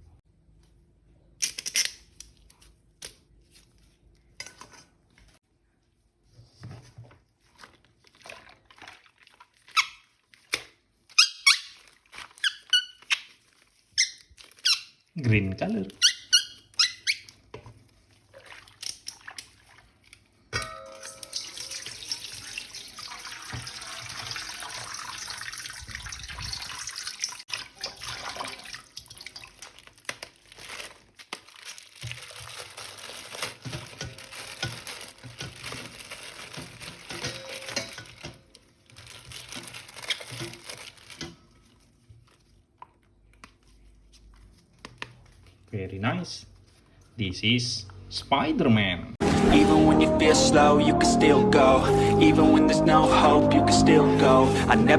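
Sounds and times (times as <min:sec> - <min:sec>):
tap water running and splashing: 0:21.1 - 0:30.3.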